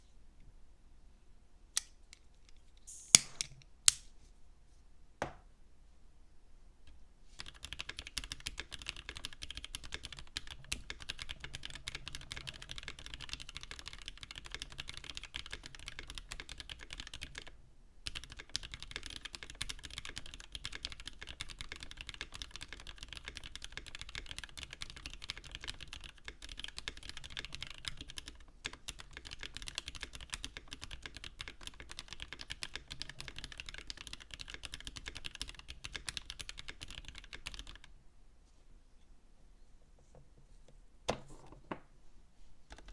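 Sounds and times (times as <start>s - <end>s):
typing on mechanical keyboard: 7.4s - 37.9s.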